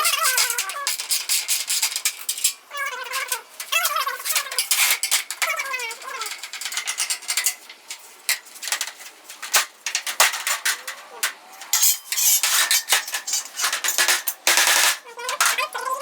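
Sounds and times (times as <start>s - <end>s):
rapid rattling clicks: 3.2s - 15.7s.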